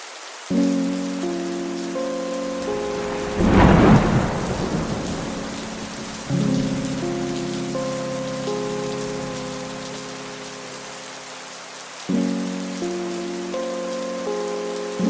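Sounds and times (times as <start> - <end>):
steady rain: 0.0 - 15.0
thunder clap and roll: 2.5 - 7.6.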